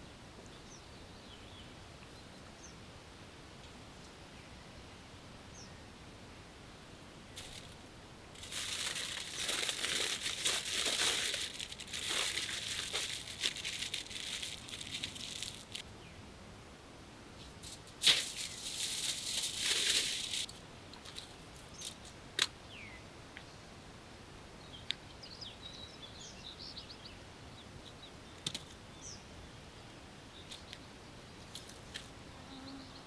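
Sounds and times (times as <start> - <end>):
material crinkling and rustling: 7.4 - 7.8, 8.4 - 15.8, 17.6 - 21.2.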